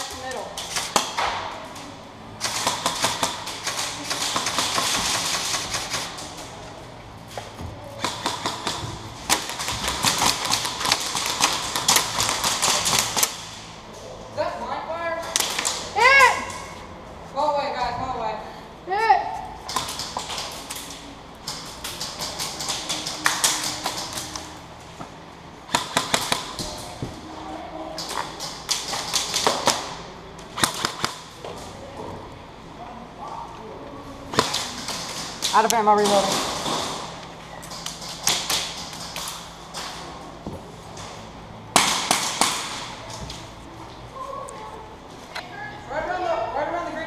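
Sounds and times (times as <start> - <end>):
airsoft gunfire: 2.4 - 6.2, 8.0 - 13.6, 25.7 - 26.7, 28.1 - 30.0, 30.6 - 31.3, 41.7 - 43.0.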